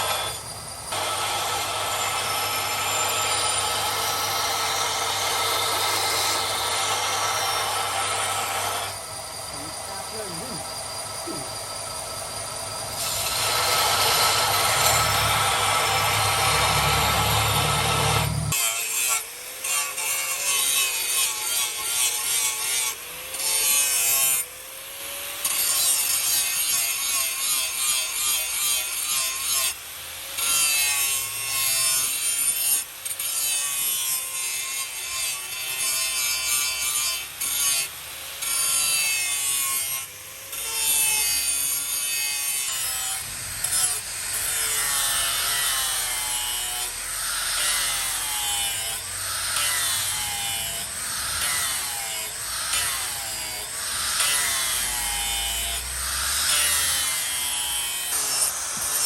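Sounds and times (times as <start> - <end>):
hand tool rasping: 57.8 - 59.0.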